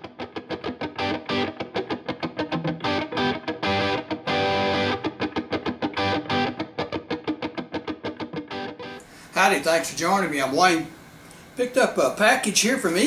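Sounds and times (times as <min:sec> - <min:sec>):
distorted electric guitar: 0:00.0 - 0:09.0.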